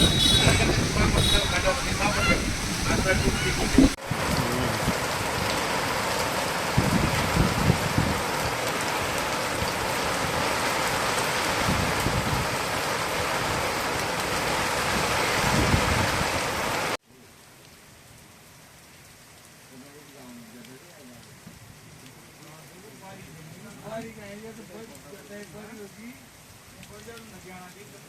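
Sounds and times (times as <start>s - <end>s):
low thunder rumbles: 0.0s - 5.0s
heavy rain pouring: 0.0s - 28.0s.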